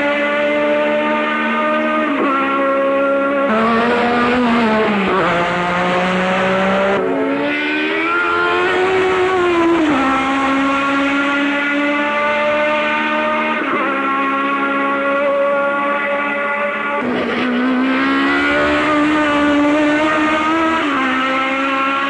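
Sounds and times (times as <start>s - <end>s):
racing car engine revving: 0.0s - 22.0s.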